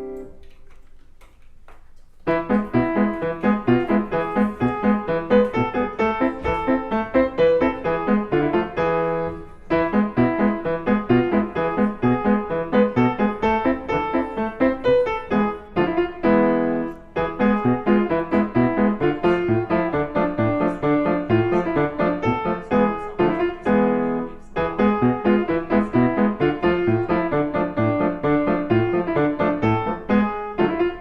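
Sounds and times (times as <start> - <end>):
piano music: 0.0 - 0.5, 2.2 - 31.0.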